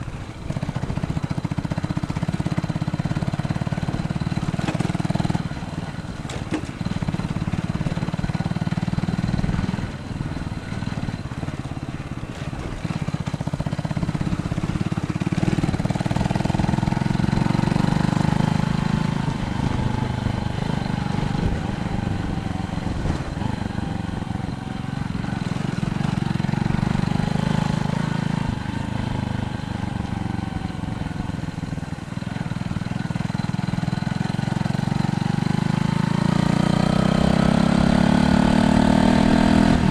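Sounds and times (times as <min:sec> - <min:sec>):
wind buffeting microphone: 0:04.5 - 0:32.8.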